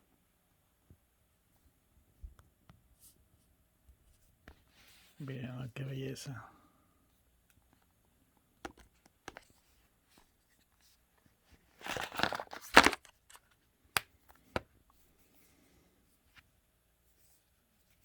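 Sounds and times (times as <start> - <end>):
wrapping crinkling and tearing: 11.8 - 13.4
packaging clicks: 11.8 - 14.1.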